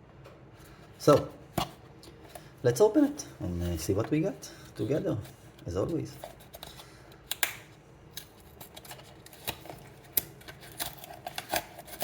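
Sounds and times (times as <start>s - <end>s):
packaging rustling and tearing: 8.3s - 12.0s.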